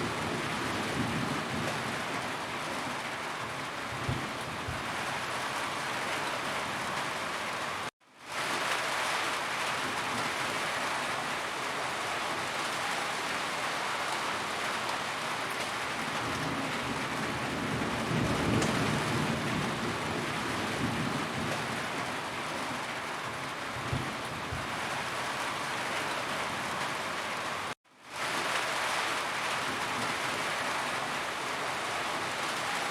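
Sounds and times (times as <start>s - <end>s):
low rumble of thunder: 0.0s - 2.3s, 3.9s - 5.1s, 16.0s - 22.3s, 23.7s - 24.9s
heavy rain drumming on a roof: 0.0s - 32.9s.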